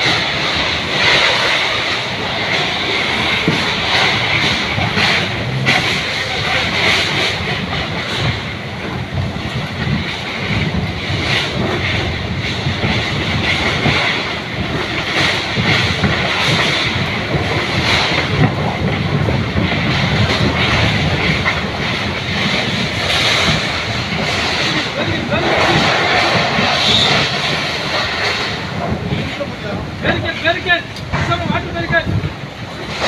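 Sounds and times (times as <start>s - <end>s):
gusty wind buffeting microphone: 0.0s - 33.0s.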